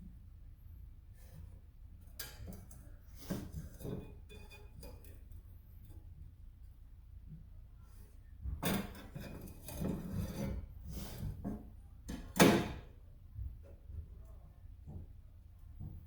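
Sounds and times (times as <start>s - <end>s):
scraping on a workbench: 2.2s - 5.3s, 8.5s - 12.8s.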